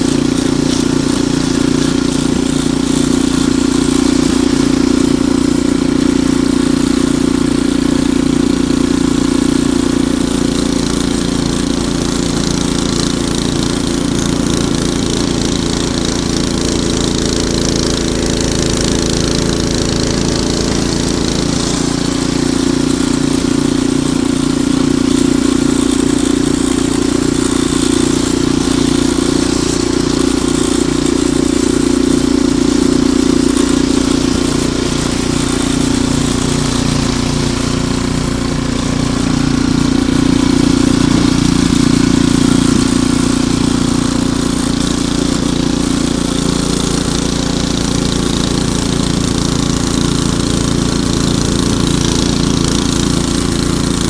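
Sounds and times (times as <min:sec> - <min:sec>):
snowblower engine running: 0:00.0 - 0:54.0.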